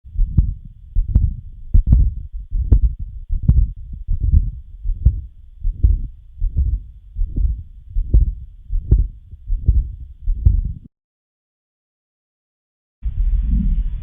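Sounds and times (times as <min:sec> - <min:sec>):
continuous heart murmur: 0:00.1 - 0:10.9
heartbeat: 0:00.1 - 0:10.9.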